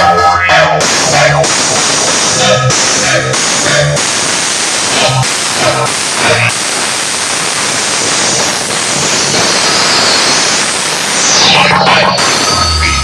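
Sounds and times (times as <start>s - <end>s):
shouted vocal samples: 0.0s - 4.1s
dance track over sound system: 0.0s - 13.0s
white-noise riser: 0.8s - 13.0s.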